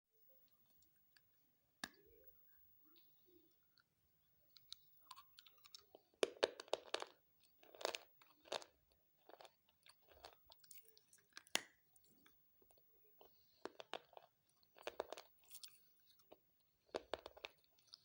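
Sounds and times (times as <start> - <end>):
crunchy chewing: 4.6 - 18.0.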